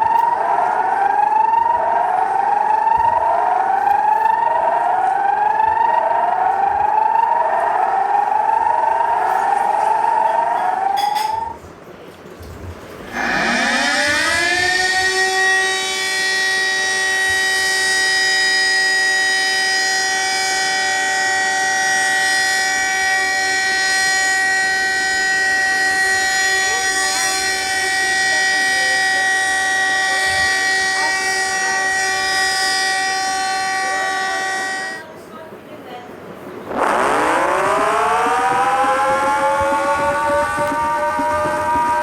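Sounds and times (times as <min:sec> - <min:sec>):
alarm tone sweeping into horn chord: 0:13.0 - 0:35.1, 0:36.7 - 0:42.0.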